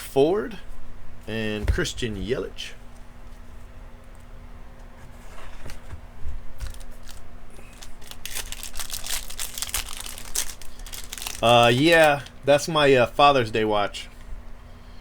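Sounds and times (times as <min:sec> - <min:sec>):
cards being handled: 0:06.6 - 0:12.4
wrapper crinkling and tearing: 0:06.6 - 0:12.4.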